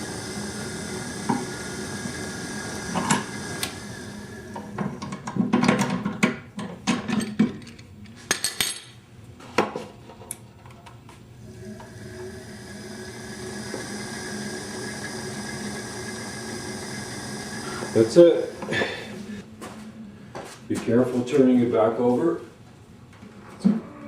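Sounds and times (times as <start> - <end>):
motor hum: 0.0 - 5.5, 11.4 - 19.4.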